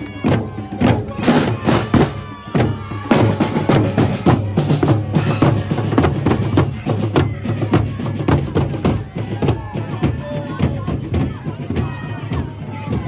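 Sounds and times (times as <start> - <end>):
band drums and percussion: 0.0 - 13.0.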